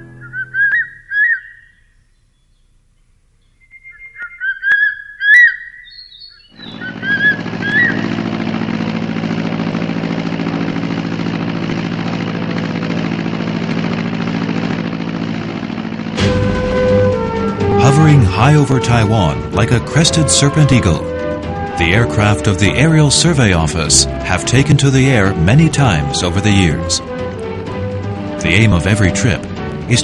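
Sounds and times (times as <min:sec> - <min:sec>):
aircraft engine drone: 0:00.0 - 0:01.2, 0:06.5 - 0:30.0
bird chirps: 0:00.0 - 0:08.3.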